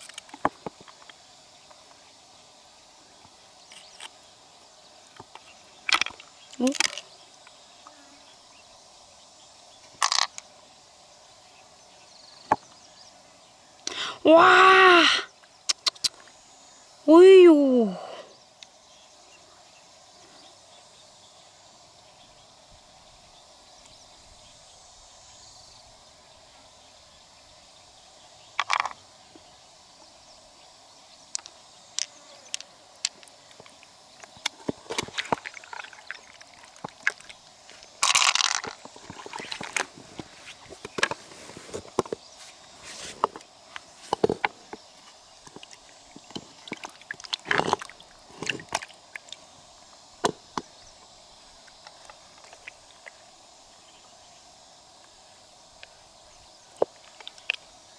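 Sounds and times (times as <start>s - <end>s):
shells scraping: 38.0s - 44.6s.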